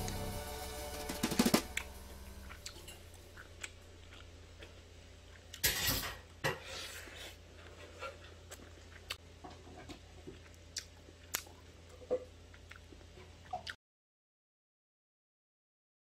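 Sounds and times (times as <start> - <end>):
background music: 0.0 - 3.4
close-up chewing: 2.5 - 5.6, 7.6 - 9.2.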